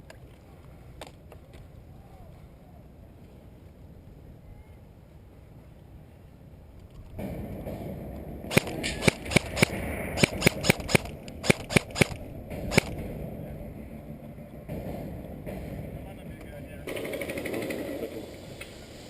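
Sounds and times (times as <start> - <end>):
low rumble of wind: 0.0 - 19.0
airsoft gun shots: 8.5 - 13.1.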